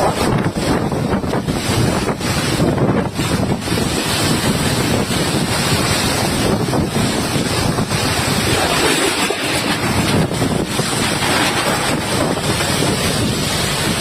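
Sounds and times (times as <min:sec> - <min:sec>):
strong wind buffeting microphone: 0:00.0 - 0:14.0.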